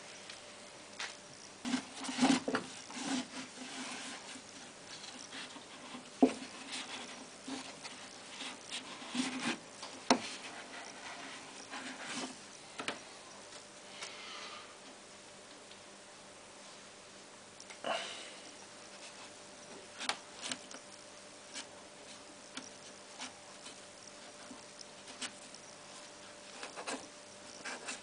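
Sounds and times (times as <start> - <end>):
rubbing and scraping: 1.6 - 12.4.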